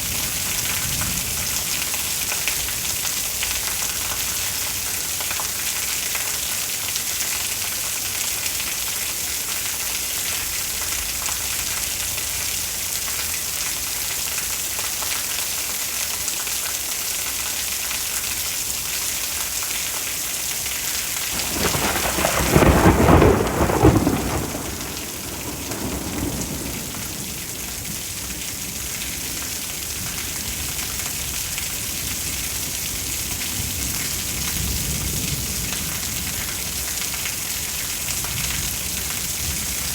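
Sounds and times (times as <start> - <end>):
steady rain: 0.0 - 39.9
thunder clap and rumble: 21.3 - 29.4.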